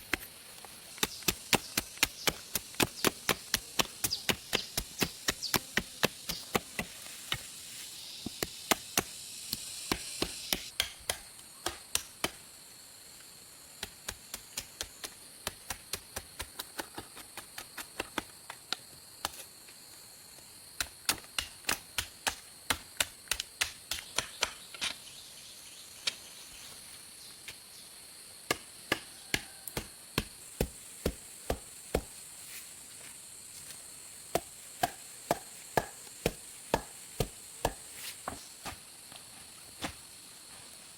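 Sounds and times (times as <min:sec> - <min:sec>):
high insect buzz: 0:00.8 - 0:10.7
chopping strikes: 0:34.3 - 0:38.8.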